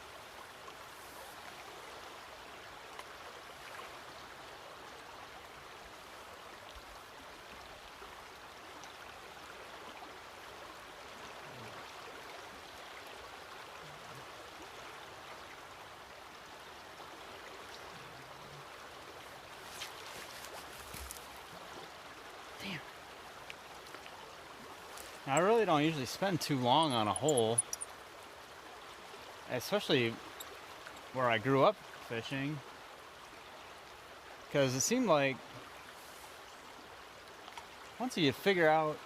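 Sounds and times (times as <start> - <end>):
river water rushing: 0.0 - 39.0
small clicks: 27.2 - 27.9.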